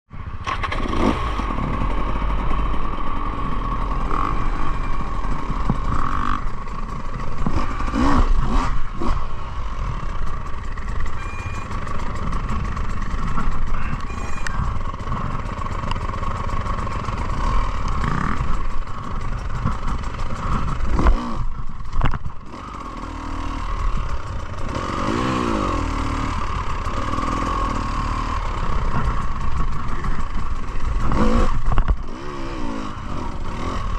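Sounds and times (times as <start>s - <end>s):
motorcycle engine running: 0.2s - 33.9s
engine clatter and knocks: 10.1s - 23.2s, 26.5s - 32.2s.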